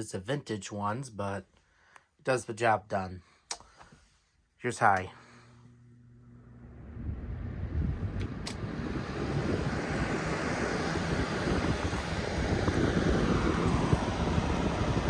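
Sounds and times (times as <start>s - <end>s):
box fan rushing air: 5.2s - 15.0s.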